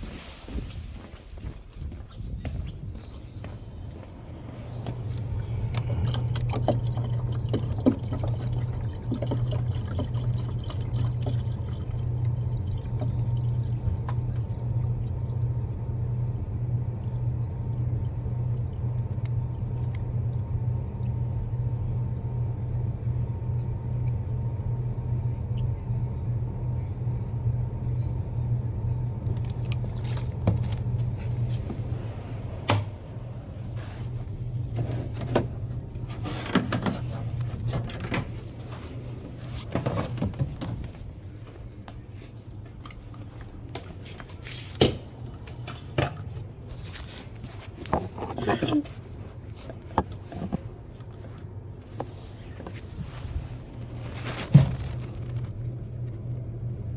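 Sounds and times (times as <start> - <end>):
steady low hum: 0.0 - 56.9
water running and gurgling: 5.0 - 20.1.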